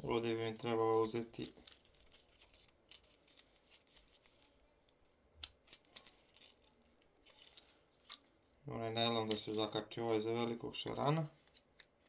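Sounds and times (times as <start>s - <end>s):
plastic packets crinkling: 0.1s - 4.6s, 5.6s - 8.4s.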